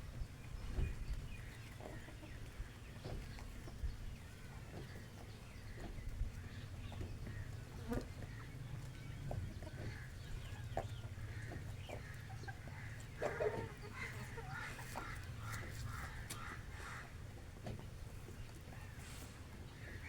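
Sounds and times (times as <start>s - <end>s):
hens and rooster clucking: 0.2s - 20.0s.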